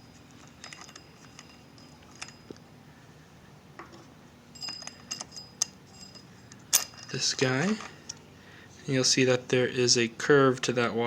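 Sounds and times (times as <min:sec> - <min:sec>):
metal parts clinking: 0:00.0 - 0:02.7, 0:04.5 - 0:08.2.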